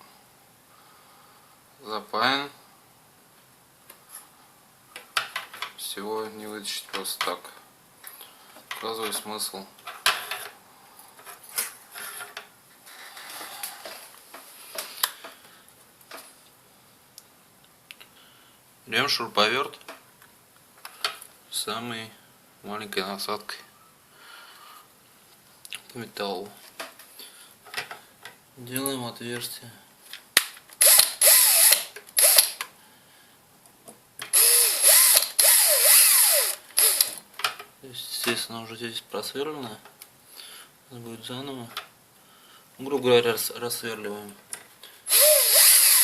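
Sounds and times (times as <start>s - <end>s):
cordless drill motor whine: 30.8s - 32.5s, 34.3s - 37.2s, 45.1s - 46.0s.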